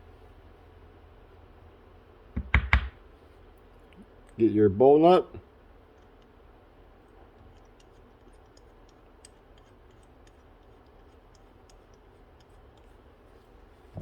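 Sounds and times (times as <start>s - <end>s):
small metal parts clicking: 7.4s - 13.0s.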